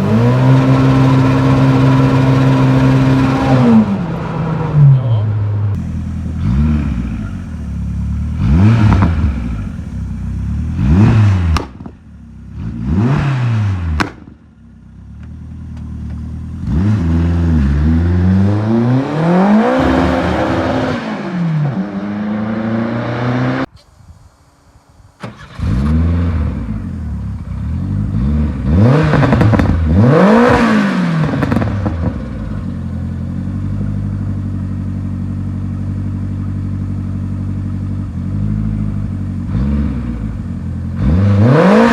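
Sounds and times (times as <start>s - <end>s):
car engine revving: 0.0s - 14.3s, 15.3s - 23.7s, 25.4s - 34.4s, 38.2s - 41.9s
car engine idling: 5.7s - 12.6s, 14.3s - 16.6s, 31.5s - 39.4s.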